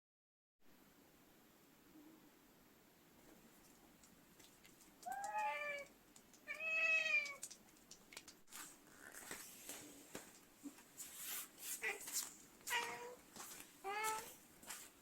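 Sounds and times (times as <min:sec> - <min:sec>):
faint clicks and rustling: 0:03.2 - 0:15.0
cat meowing: 0:05.0 - 0:07.4, 0:11.8 - 0:12.1, 0:12.7 - 0:13.2.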